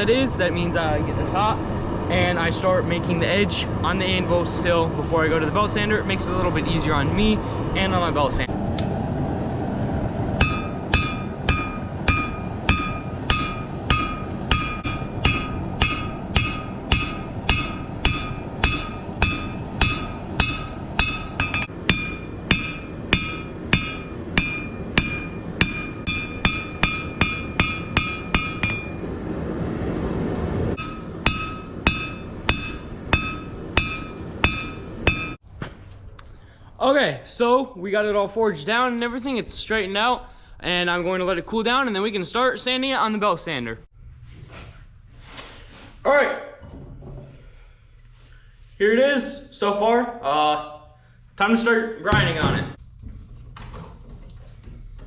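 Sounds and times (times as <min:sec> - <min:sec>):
low rushing noise: 0:00.0 - 0:35.4
hammer striking metal on anvil: 0:10.4 - 0:29.1, 0:30.8 - 0:35.4.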